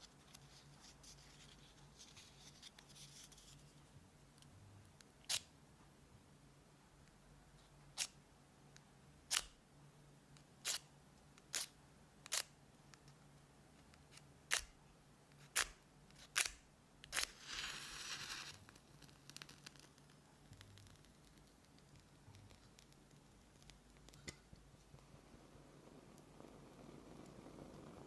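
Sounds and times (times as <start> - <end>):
crackling hiss: 16.3 - 28.0.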